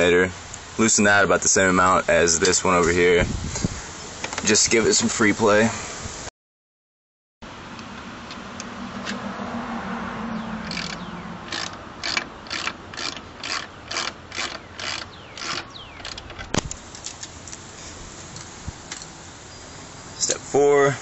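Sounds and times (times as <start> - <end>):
ratchet wrench clicking: 10.6 - 17.4.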